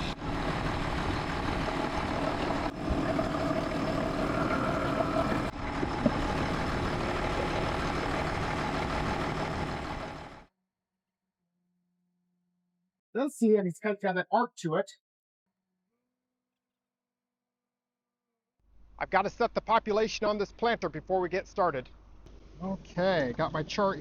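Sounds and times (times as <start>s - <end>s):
tractor diesel engine running: 0.0s - 10.5s.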